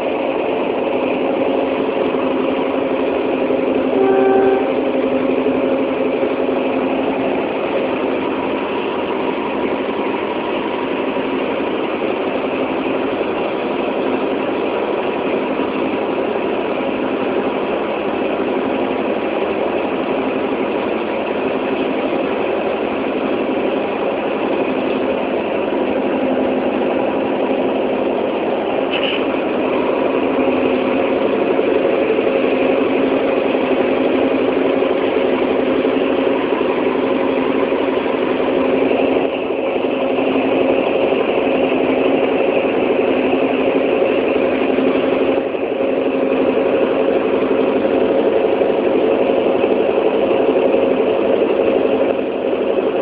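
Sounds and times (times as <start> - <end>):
train engine humming: 0.0 - 53.0
short pitched tone: 3.9 - 5.1.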